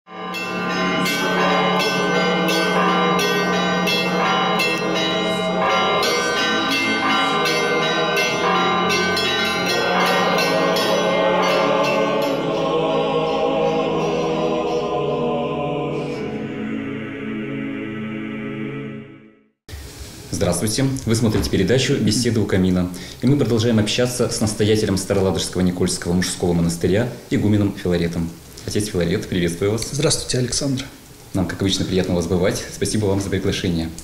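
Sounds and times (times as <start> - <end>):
church bells ringing a peal: 0.1 - 15.4.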